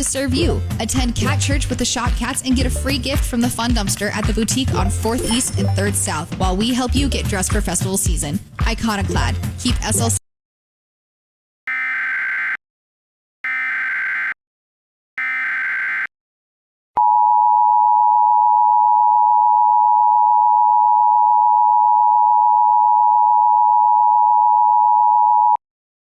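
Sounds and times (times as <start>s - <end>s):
buzzy digital data bursts: 15.2s - 16.1s.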